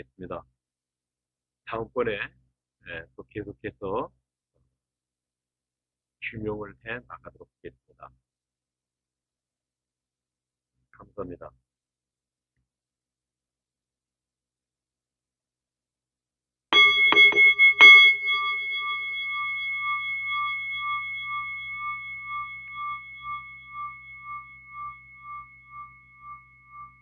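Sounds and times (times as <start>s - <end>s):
singing bowl chime ringing: 16.8s - 27.0s.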